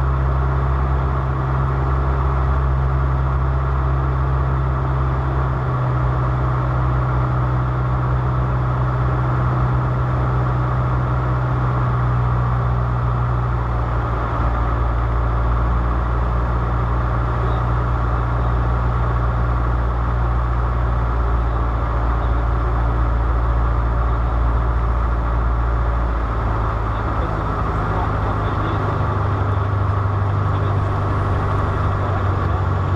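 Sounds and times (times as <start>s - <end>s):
aircraft piston engine droning: 23.8s - 32.9s.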